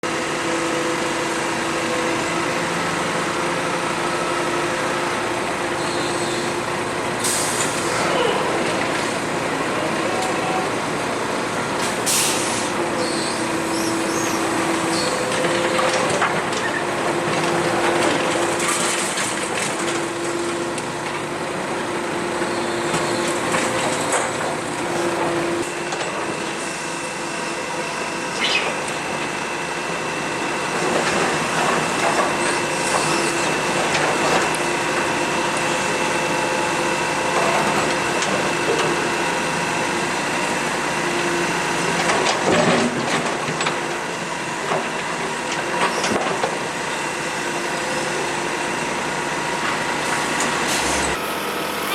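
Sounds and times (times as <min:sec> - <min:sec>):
excavator engine and hydraulics: 0:00.0 - 0:51.9
high steady whine: 0:50.3 - 0:51.9.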